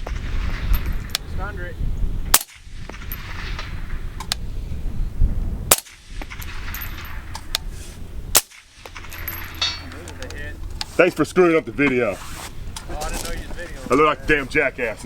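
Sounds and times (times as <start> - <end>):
suppressed rifle shots: 2.3 - 4.4, 5.7 - 7.5, 8.3 - 10.0.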